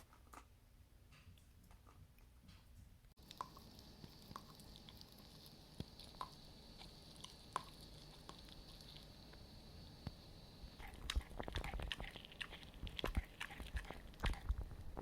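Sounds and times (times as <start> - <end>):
dog gnawing a bone: 3.2 - 9.1, 10.8 - 15.0.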